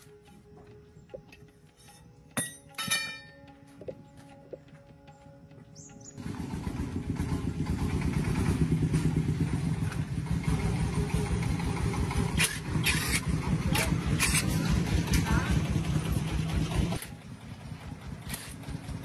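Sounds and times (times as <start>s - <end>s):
engine running with rough beat: 0.0s - 19.0s.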